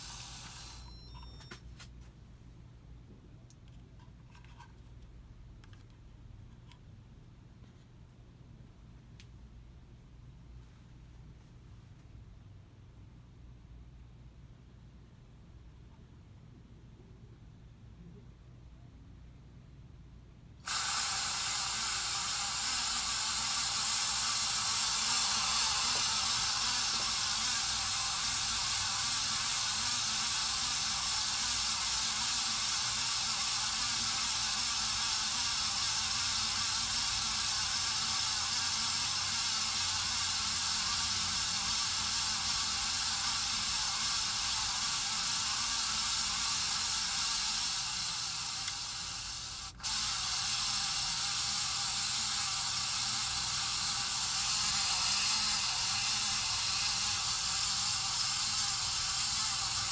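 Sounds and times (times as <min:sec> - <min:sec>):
ceiling fan grinding: 0:00.0 - 0:01.0, 0:20.7 - 0:59.9.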